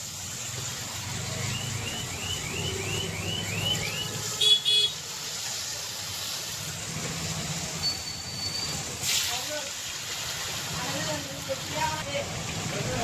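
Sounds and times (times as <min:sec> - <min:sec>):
low traffic rumble: 0:00.0 - 0:13.0
electronic chirps: 0:01.5 - 0:04.1.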